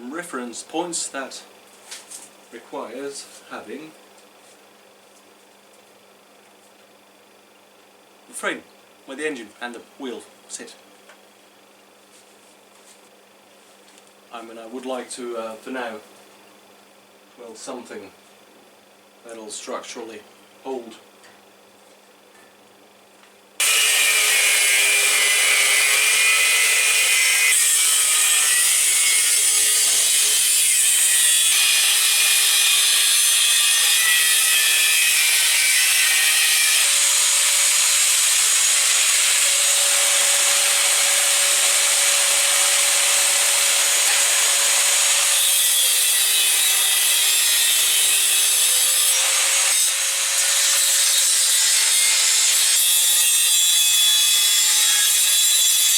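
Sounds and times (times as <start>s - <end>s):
power tool hissing and rasping: 23.6s - 52.3s.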